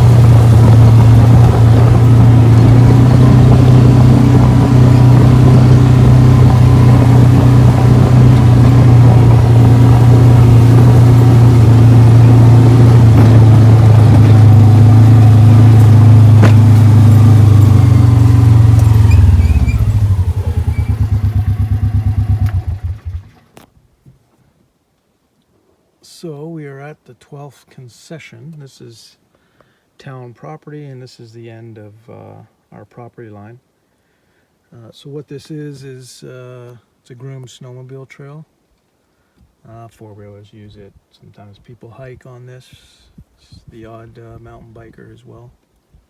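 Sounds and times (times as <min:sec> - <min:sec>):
small vehicle engine running: 0:00.0 - 0:23.5.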